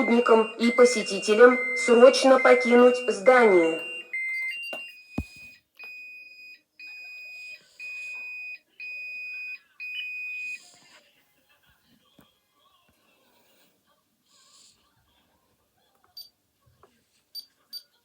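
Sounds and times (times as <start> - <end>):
high-pitched alarm beeps: 0.0 - 4.6.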